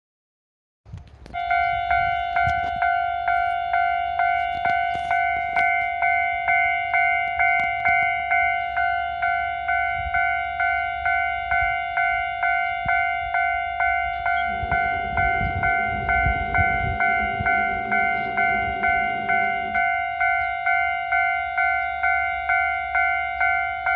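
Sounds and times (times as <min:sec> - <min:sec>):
level crossing warning bell: 0:01.2 - 0:23.9
low rumble: 0:12.8 - 0:23.0.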